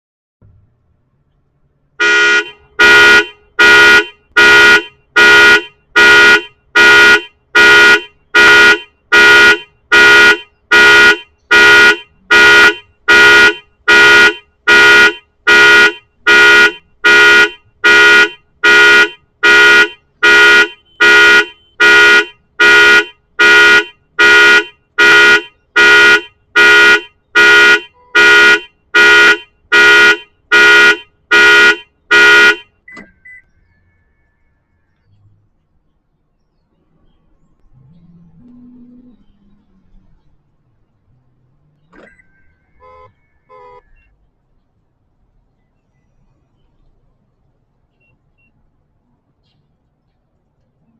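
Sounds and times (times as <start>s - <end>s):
car alarm horn blasts: 2.0s - 33.5s, 42.7s - 43.9s.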